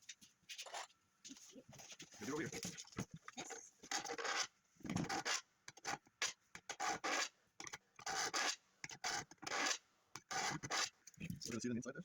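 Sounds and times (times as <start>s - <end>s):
hand file rasping metal: 8.0s - 10.9s.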